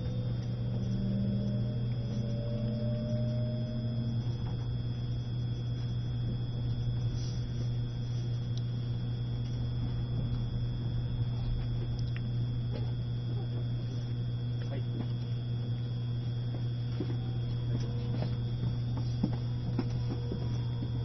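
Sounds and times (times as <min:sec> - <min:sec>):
faint rising tone: 0:00.0 - 0:12.7
high-pitched whine: 0:00.0 - 0:21.0
train low hum: 0:00.0 - 0:21.0.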